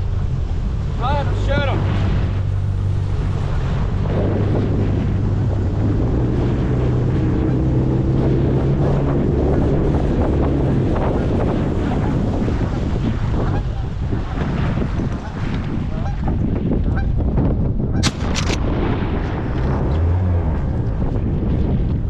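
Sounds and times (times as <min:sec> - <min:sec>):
water splashing: 0:00.0 - 0:16.3
boat motor running: 0:00.0 - 0:17.2
wind noise on microphone: 0:00.0 - 0:22.0.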